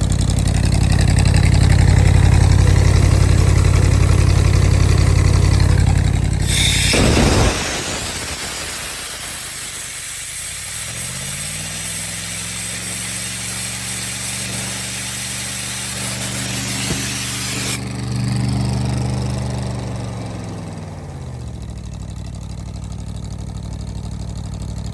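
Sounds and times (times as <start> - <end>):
air compressor engine running: 0.0 - 20.1
air hissing: 1.3 - 17.8.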